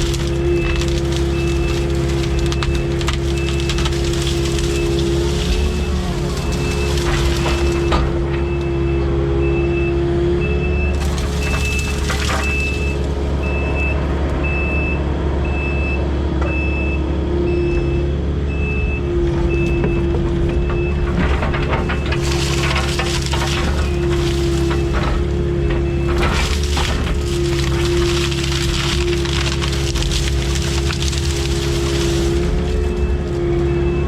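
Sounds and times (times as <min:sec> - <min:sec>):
branches breaking: 0:00.0 - 0:08.5, 0:10.9 - 0:13.8, 0:21.4 - 0:33.7
heavy diesel machinery running: 0:00.0 - 0:34.0
reversing alarm beeping: 0:04.6 - 0:21.2, 0:32.7 - 0:34.0.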